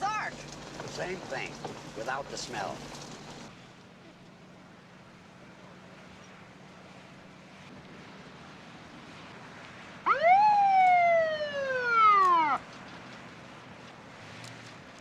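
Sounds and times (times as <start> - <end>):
police siren wail: 10.1 - 12.6.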